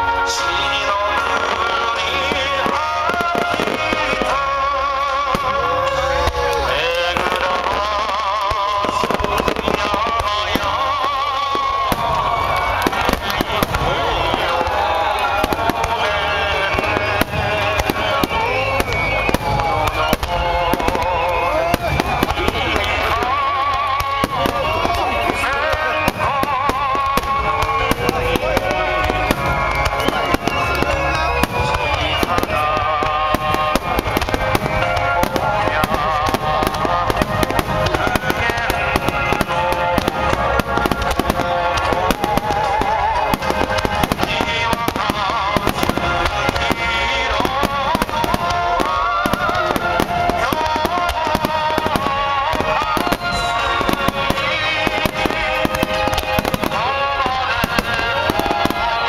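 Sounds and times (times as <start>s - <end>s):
fireworks bursting and crackling: 0.0s - 59.0s
whistling firework shells: 0.0s - 59.0s.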